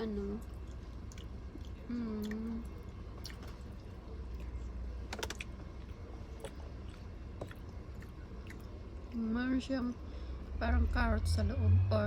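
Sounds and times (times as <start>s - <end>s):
wet mouth eating noises: 0.4s - 9.2s.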